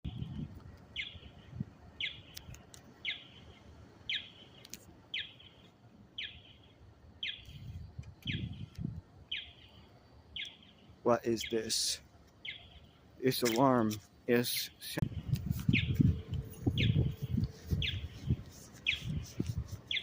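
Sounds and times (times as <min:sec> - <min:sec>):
alarm chirping: 0:10.4 - 0:12.9, 0:15.6 - 0:19.2.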